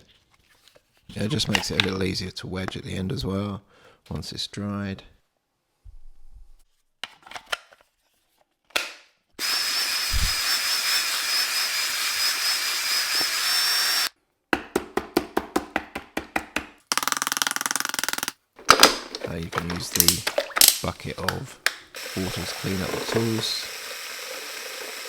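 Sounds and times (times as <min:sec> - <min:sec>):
power drill mixing slurry: 0:09.4 - 0:14.1, 0:19.1 - 0:25.0.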